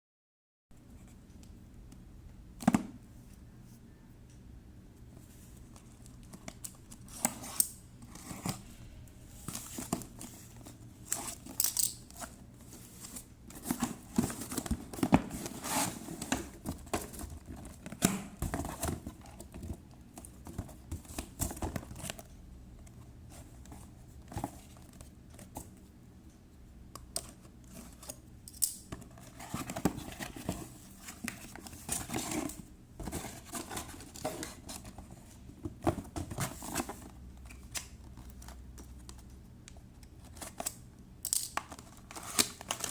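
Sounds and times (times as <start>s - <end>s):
packaging rustling and tearing: 41.7s - 42.9s.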